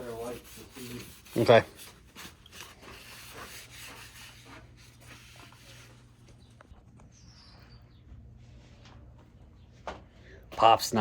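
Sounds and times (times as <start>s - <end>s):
faint scratching and handling: 0.0s - 6.8s.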